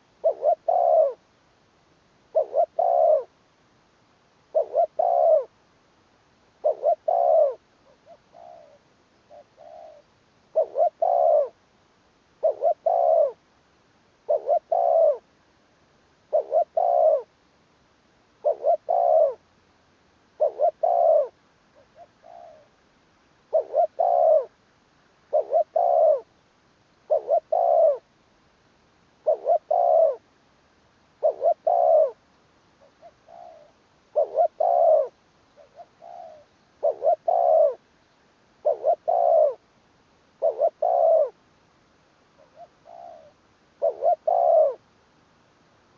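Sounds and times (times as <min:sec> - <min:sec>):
dove cooing: 0:00.0 - 0:01.3, 0:02.3 - 0:03.4, 0:04.5 - 0:05.6, 0:06.6 - 0:11.6, 0:12.4 - 0:13.4, 0:14.3 - 0:15.3, 0:16.3 - 0:17.3, 0:18.4 - 0:19.4, 0:20.4 - 0:22.7, 0:23.5 - 0:24.6, 0:25.3 - 0:26.3, 0:27.1 - 0:28.1, 0:29.2 - 0:30.3, 0:31.2 - 0:32.2, 0:32.8 - 0:37.8, 0:38.6 - 0:39.6, 0:40.4 - 0:41.4, 0:42.4 - 0:44.8.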